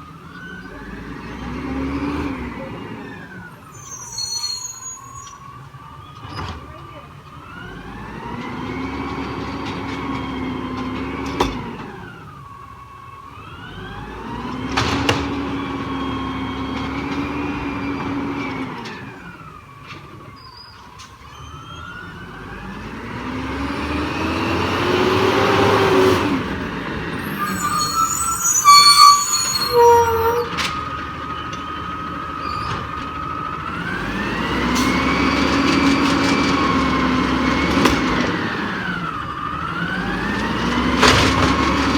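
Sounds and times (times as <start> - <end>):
truck diesel engine revving: 22.4 - 30.7.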